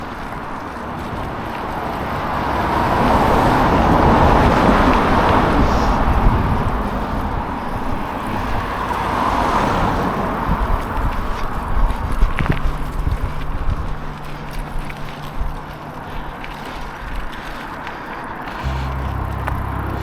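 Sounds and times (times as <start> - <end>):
vehicle passing by: 18.6 - 20.0.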